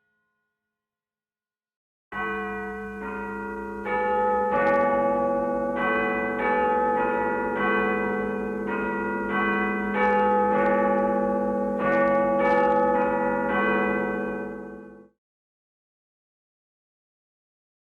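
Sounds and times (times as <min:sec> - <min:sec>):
church bells pealing: 0:02.2 - 0:15.1.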